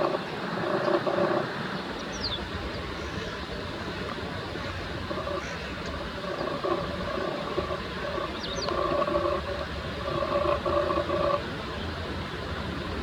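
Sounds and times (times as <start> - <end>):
distant traffic hum: 0.0 - 13.0.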